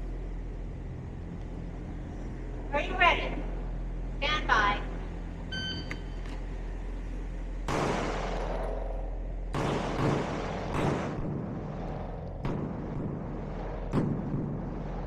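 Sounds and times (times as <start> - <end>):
pistol firing single shots: 7.7 - 11.6.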